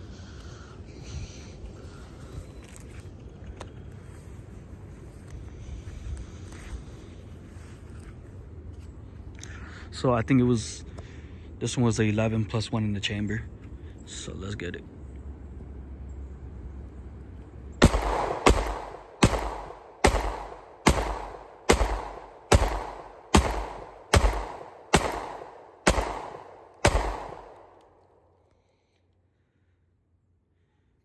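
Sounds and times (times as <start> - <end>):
pistol shots: 17.8 - 27.9.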